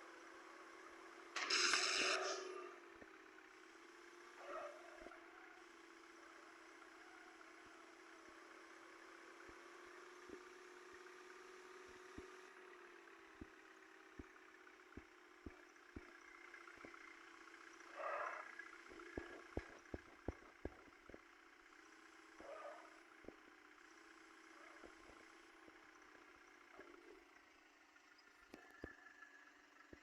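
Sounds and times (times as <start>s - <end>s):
faint vehicle engine running: 0.0s - 30.0s.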